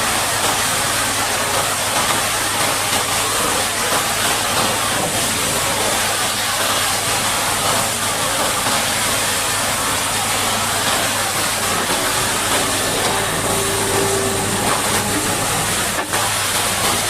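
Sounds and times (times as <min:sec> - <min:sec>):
high-pressure water jet spraying: 0:00.0 - 0:17.0
low hum: 0:12.0 - 0:16.0.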